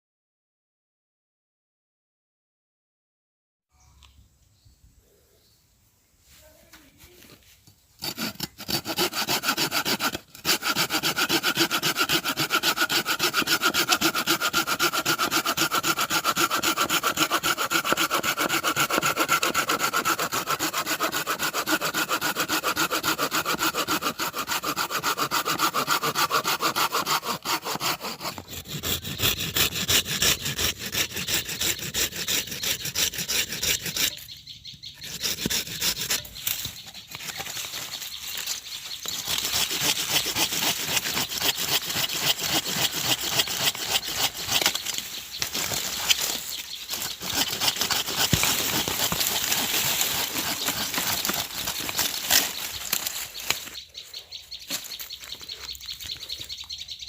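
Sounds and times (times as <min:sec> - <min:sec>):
hand saw cutting: 0:08.0 - 0:34.3, 0:35.0 - 0:53.8.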